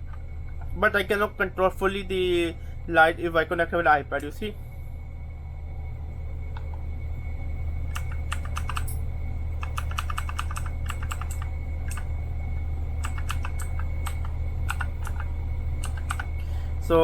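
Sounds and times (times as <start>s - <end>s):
steady low hum: 0.0s - 17.0s
clicky mechanical keyboard typing: 7.9s - 9.0s, 9.6s - 12.1s, 13.0s - 16.3s.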